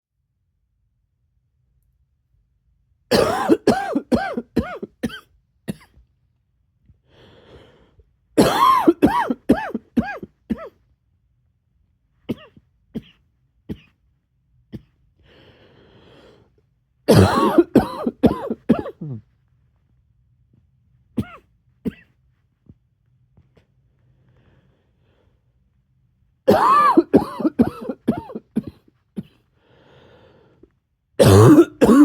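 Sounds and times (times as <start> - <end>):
harsh coughing: 3.1 - 6.0, 8.4 - 10.8, 12.3 - 14.0, 17.1 - 19.3, 21.2 - 22.1, 26.5 - 29.5, 31.2 - 32.0
raspy in-breath: 7.1 - 8.0, 15.2 - 16.5, 29.6 - 30.7.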